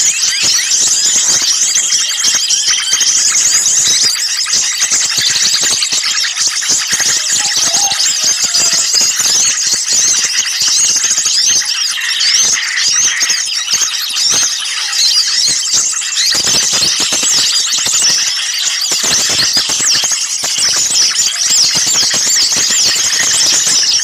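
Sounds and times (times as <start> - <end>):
small birds chattering and chirping: 0.0 - 24.0.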